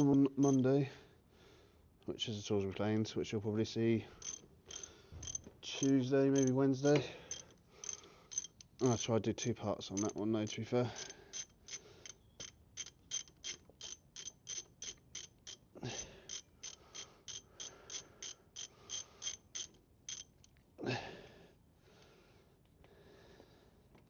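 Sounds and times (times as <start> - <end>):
ratchet wrench clicking: 0.0 - 0.6, 4.2 - 6.6, 7.2 - 9.1, 9.8 - 20.6.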